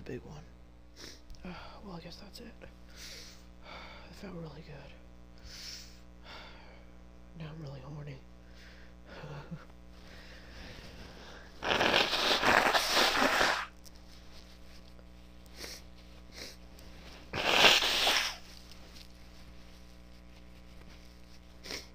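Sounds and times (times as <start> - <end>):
woman blowing air from nose: 11.6 - 13.7, 17.3 - 18.5, 21.6 - 21.9.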